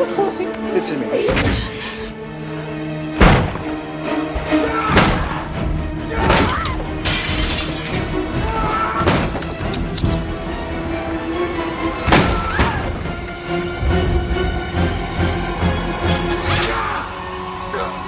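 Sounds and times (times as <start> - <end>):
tense film score: 0.0 - 18.0
sharp crashes and impacts: 3.2 - 3.8
glass shattering: 6.4 - 8.1.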